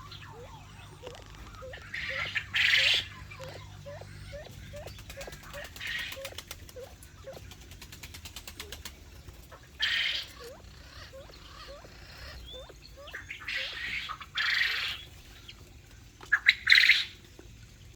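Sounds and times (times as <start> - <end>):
birds calling: 0.0 - 17.9.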